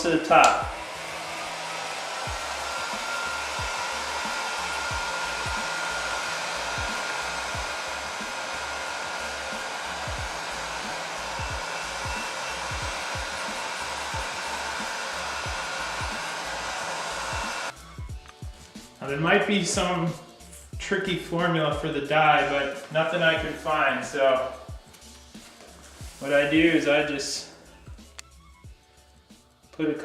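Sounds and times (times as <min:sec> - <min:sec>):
heat gun blowing: 0:00.0 - 0:17.8, 0:22.4 - 0:28.1.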